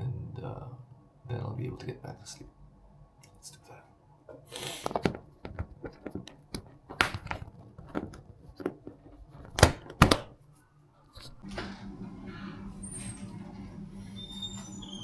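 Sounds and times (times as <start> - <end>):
handling clicks and knocks: 5.0 - 10.4
steady low hum: 11.2 - 15.0.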